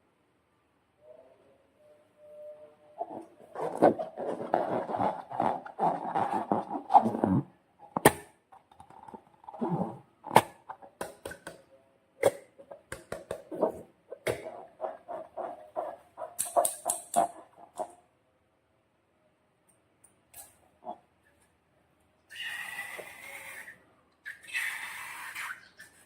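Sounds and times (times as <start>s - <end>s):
rubbery balloon squeaks: 3.0s - 7.5s.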